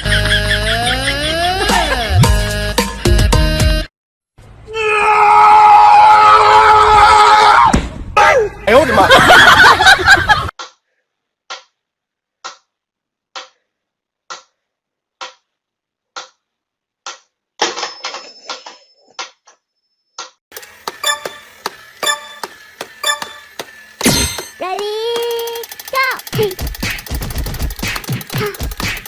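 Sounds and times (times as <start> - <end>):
regular sharp ticks: 20.5 - 23.8, 24.5 - 29.0.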